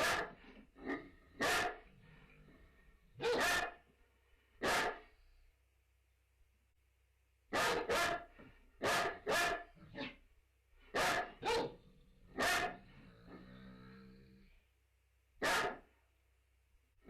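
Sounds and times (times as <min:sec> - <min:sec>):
dogs barking: 0:00.0 - 0:01.9, 0:03.2 - 0:03.9, 0:04.6 - 0:05.1, 0:07.5 - 0:10.2, 0:10.9 - 0:13.0, 0:15.4 - 0:15.9.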